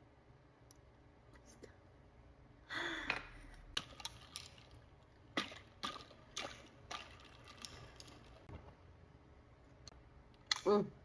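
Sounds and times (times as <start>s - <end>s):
ice and liquid sloshing in glass: 3.8s - 8.7s.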